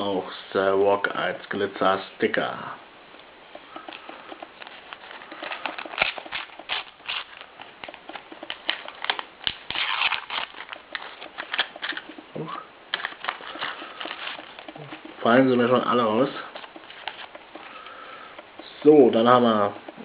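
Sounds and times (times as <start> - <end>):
sticker packet crinkling: 3.8 - 17.9.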